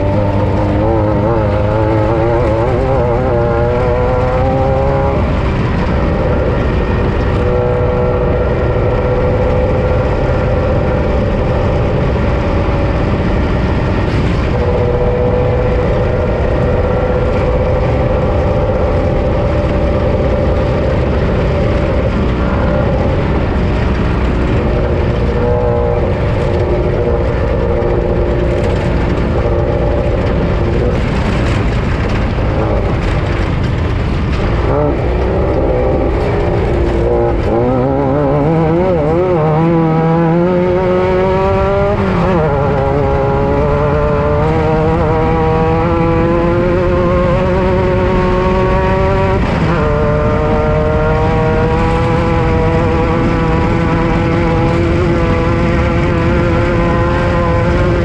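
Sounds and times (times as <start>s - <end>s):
heavy rumble of driving noise: 0.0s - 58.0s
race vehicle engine revving: 0.0s - 58.0s.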